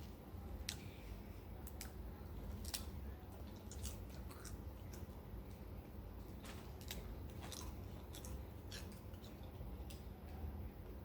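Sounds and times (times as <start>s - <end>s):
crunchy snack chewing: 1.6s - 10.0s.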